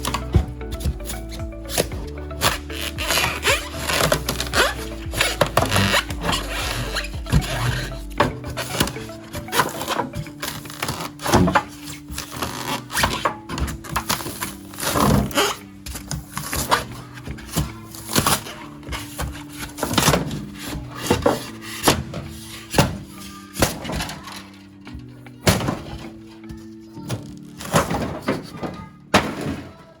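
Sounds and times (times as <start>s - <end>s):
background music with held notes: 0.0s - 30.0s.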